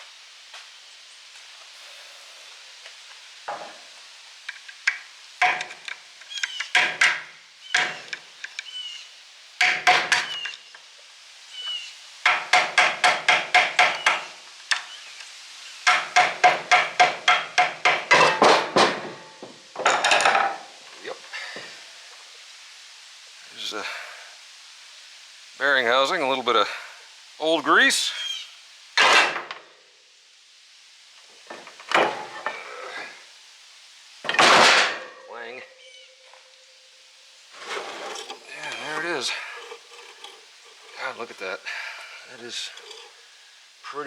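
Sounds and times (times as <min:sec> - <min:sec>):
hammer striking steel cover: 0:37.6 - 0:41.5, 0:42.5 - 0:43.2.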